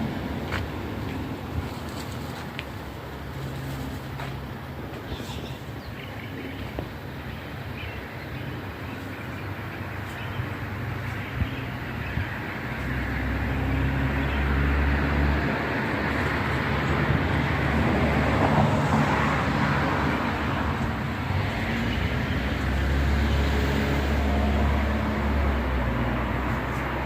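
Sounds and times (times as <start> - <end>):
outdoor traffic rumble: 0.0 - 27.0.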